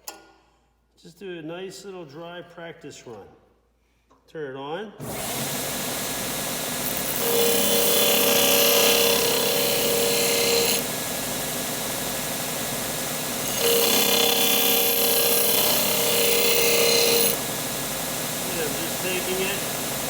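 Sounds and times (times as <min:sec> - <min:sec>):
electric sander motor running: 0:05.1 - 0:20.0
metal grinding rasp on disc: 0:06.8 - 0:10.8, 0:13.4 - 0:17.4.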